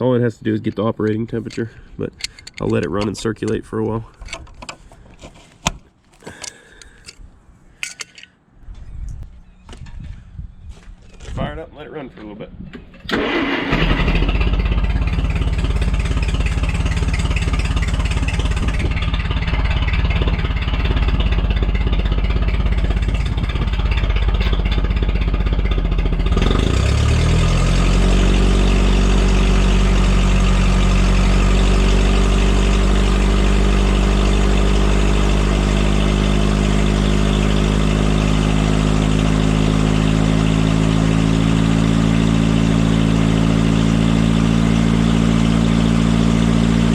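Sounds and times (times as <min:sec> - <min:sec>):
forklift engine running: 0:13.0 - 0:46.9.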